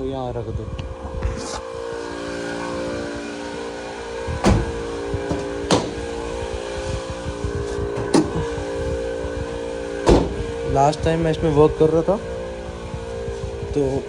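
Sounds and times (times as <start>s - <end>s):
electric air pump running: 1.6s - 11.4s
sharp knocks: 4.4s - 6.2s, 8.0s - 8.6s.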